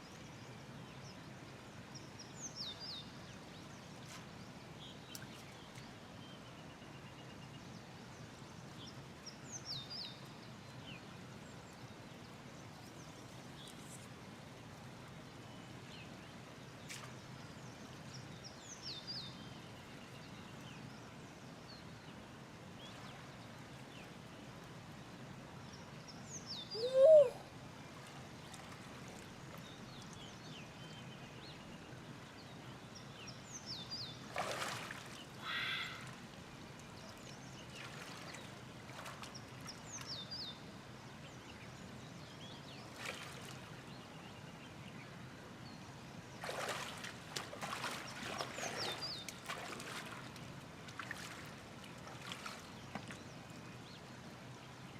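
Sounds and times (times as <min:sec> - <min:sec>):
outdoor background hiss: 0:00.0 - 0:54.9
small birds calling: 0:26.5 - 0:27.5, 0:34.7 - 0:36.3
loud rising and falling cry: 0:26.8 - 0:27.4.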